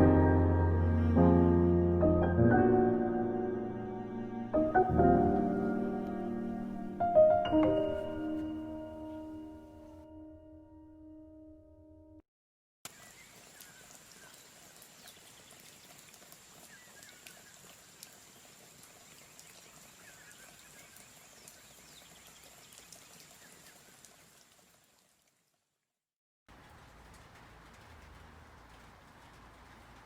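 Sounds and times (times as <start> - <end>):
faint rain pattering: 4.5 - 7.3, 12.9 - 25.8, 26.5 - 30.0
water drips: 12.9 - 25.7, 26.5 - 30.0.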